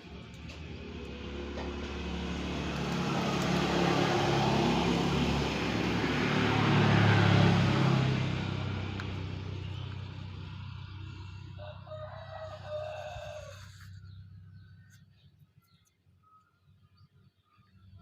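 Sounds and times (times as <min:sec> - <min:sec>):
vehicle driving past: 0:00.0 - 0:15.0.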